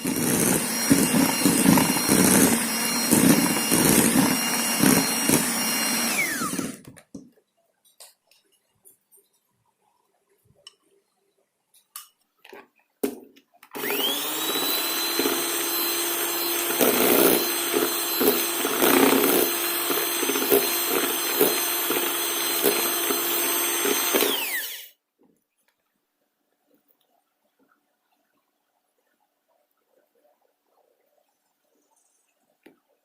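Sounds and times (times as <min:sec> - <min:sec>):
electric hand mixer whine: 0:00.0 - 0:06.9, 0:13.7 - 0:25.0.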